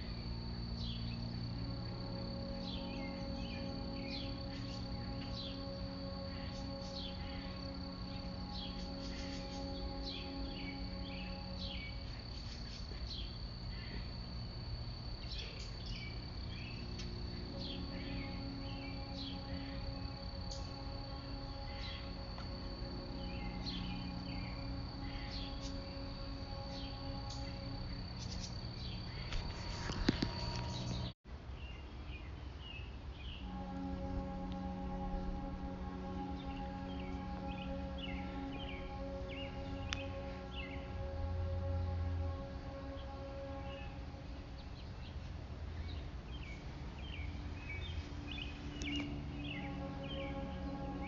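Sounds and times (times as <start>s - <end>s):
insect trill: 0.0s - 31.2s, 32.1s - 51.0s
faint low hum: 0.0s - 51.0s
birds chirping: 32.2s - 45.2s, 45.9s - 51.0s
low background rumble: 33.1s - 51.0s.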